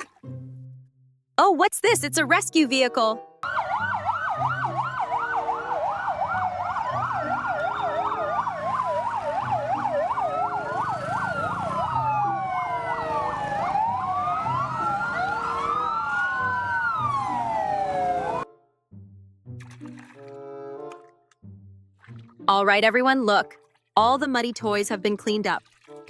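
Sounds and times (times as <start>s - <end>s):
emergency vehicle sirens: 3.4s - 18.5s.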